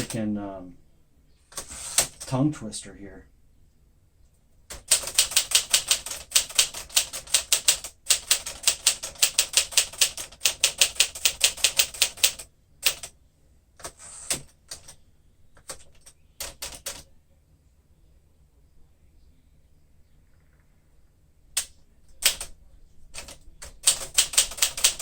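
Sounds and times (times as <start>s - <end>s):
manual typewriter keystrokes: 0.0s - 0.2s, 1.5s - 2.4s, 4.7s - 13.1s, 13.8s - 15.0s, 15.6s - 17.0s, 21.6s - 22.5s, 23.1s - 25.0s
typewriter rasp and knock: 1.5s - 2.3s, 4.7s - 13.1s, 13.8s - 15.0s, 15.6s - 17.0s, 22.2s - 22.5s, 23.2s - 25.0s.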